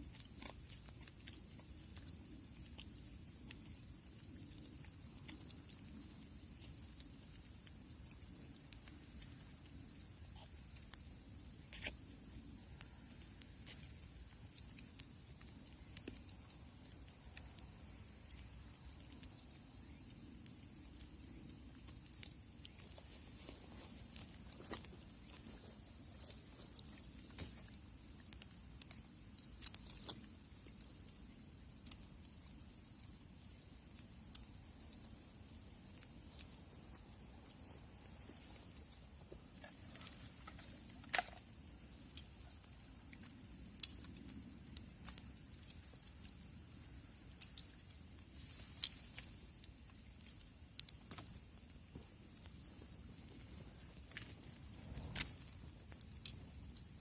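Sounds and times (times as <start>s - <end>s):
high-pitched insect chorus: 0.0s - 57.0s
bonfire crackling: 14.2s - 57.0s.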